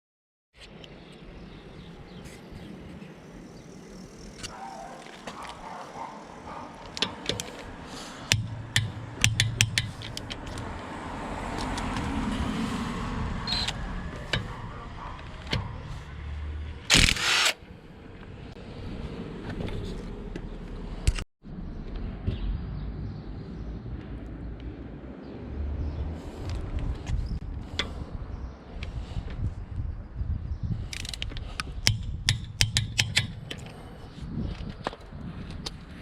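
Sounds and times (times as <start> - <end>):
metallic clicks of tools: 8.3 - 10.8, 30.9 - 33.8
loud handling burst: 16.9 - 17.6.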